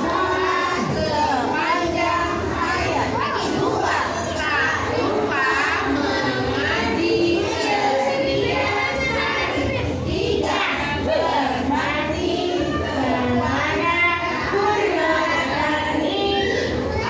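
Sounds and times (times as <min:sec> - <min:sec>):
children chanting in unison: 0:00.0 - 0:17.0.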